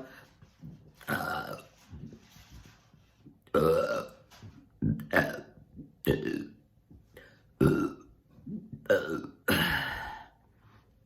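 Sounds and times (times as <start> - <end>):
woman burping: 7.6 - 10.3.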